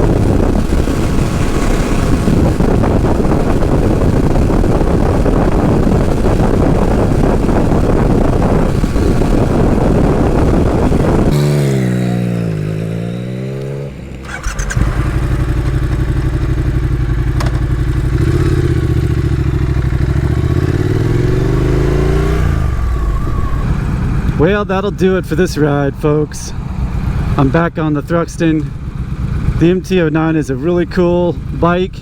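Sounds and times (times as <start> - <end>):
heavy wind noise: 0.0 - 32.0
motorcycle engine: 0.0 - 32.0.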